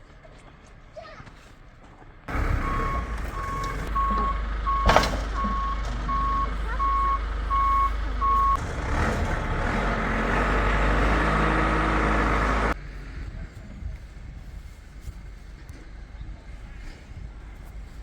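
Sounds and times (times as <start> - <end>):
heavy engine rumble: 2.0 - 18.0
truck reversing alarm beeping: 2.3 - 8.6
loud clunk: 3.2 - 6.0.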